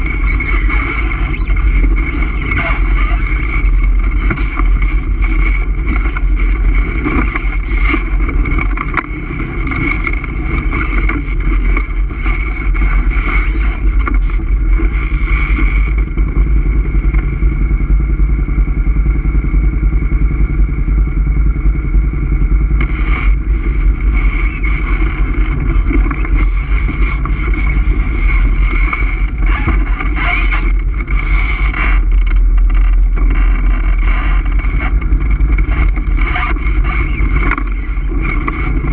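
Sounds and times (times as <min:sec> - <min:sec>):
atv engine running: 0:00.0 - 0:38.9.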